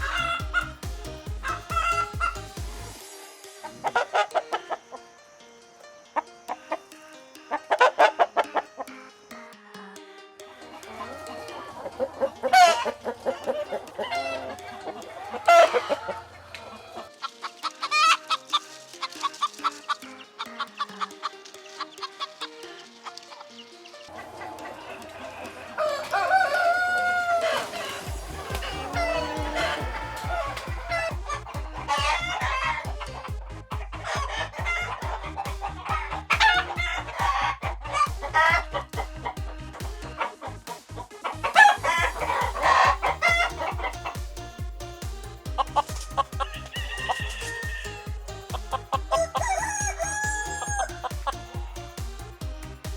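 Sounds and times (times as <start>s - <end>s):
chickens clucking: 0.0s - 2.4s, 7.5s - 51.8s
roosters crowing: 0.0s - 3.0s, 10.7s - 20.0s, 24.1s - 52.7s
faint background music: 0.0s - 52.9s
chicken squawks: 24.1s - 32.8s, 46.4s - 48.0s.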